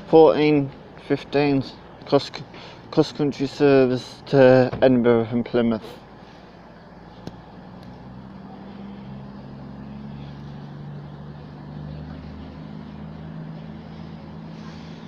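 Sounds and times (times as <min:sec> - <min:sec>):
diesel train engines pulling away: 0:05.9 - 0:15.0.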